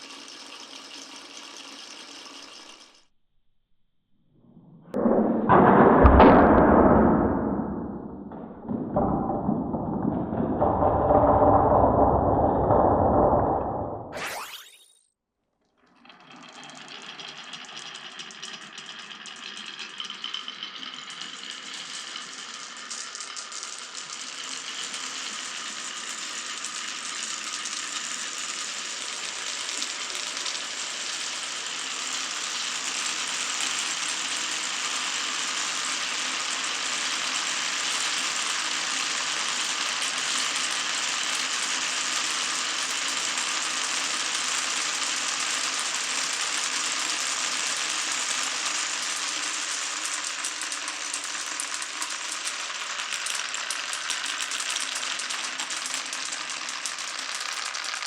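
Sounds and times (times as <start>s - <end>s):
marbles rattling on wooden run: 0.0s - 3.0s, 16.3s - 58.0s.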